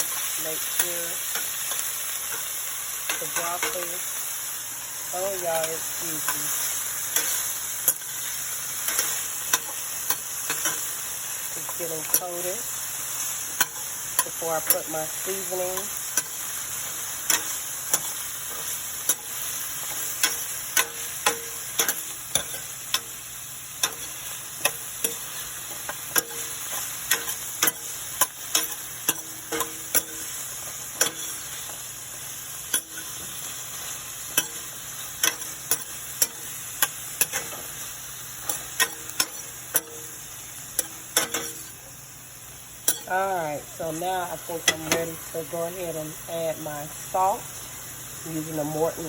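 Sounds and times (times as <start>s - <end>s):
vegetables sizzling in oil: 0.0s - 49.0s
utensil clicking against pan: 13.6s - 14.9s, 15.8s - 23.2s, 23.8s - 30.3s, 31.0s - 31.4s, 34.3s - 37.7s, 38.4s - 40.1s, 40.8s - 41.7s.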